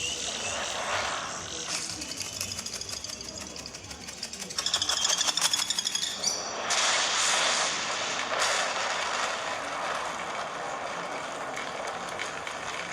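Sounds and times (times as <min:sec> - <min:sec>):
rapid clicking and rattling: 0:01.7 - 0:06.0, 0:08.3 - 0:12.9
loud rushing noise: 0:06.5 - 0:11.4.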